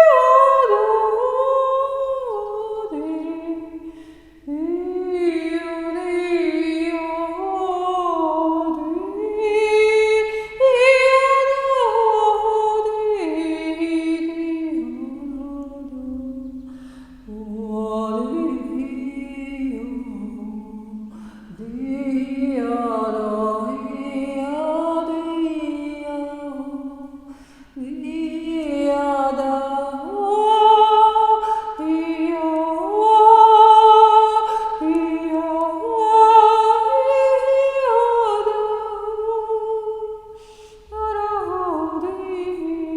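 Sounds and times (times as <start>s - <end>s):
woman singing wordlessly: 0.0s - 42.9s.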